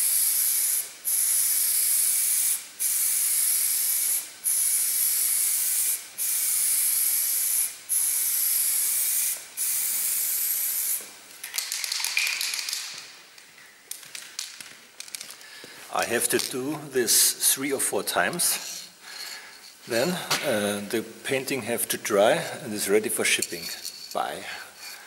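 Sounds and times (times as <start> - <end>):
spray can hissing: 0.0 - 13.2.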